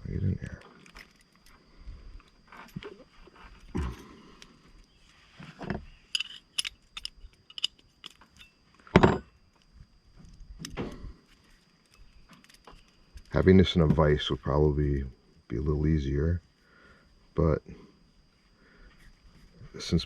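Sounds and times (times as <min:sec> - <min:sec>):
metal tools clinking and clanking: 0:05.7 - 0:09.3.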